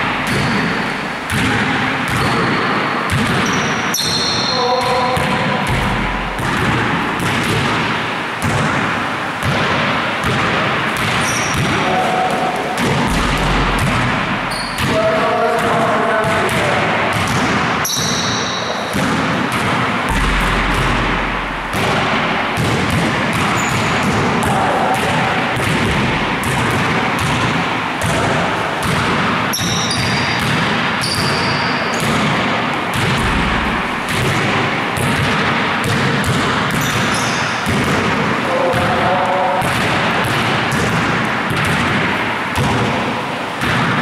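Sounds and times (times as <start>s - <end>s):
basketballs bouncing: 0.0s - 44.0s.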